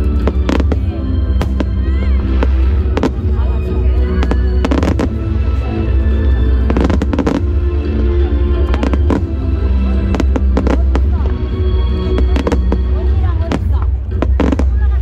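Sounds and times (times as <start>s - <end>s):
fireworks bursting in sharp bangs: 0.1s - 3.6s, 4.2s - 5.8s, 6.6s - 7.6s, 8.6s - 11.4s, 12.0s - 15.0s.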